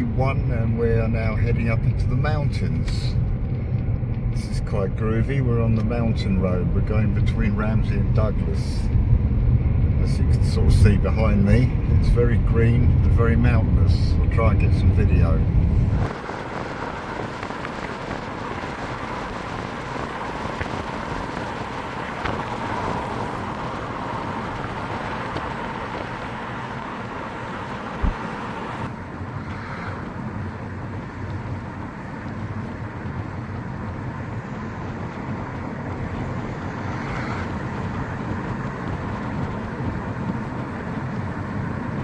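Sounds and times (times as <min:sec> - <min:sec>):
car road and engine noise: 0:00.0 - 0:42.0.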